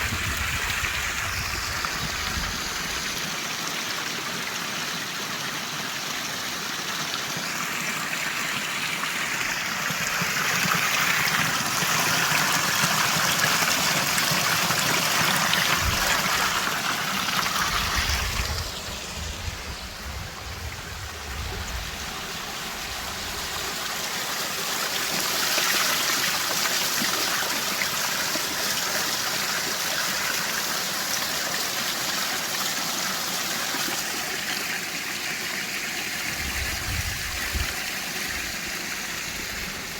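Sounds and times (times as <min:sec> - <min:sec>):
water rushing over cascades: 0:00.0 - 0:39.9.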